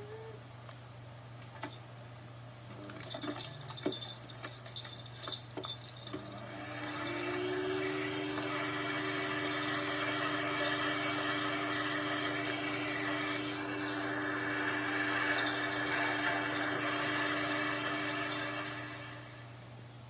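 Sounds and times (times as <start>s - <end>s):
vacuum cleaner motor whine: 6.0s - 19.6s.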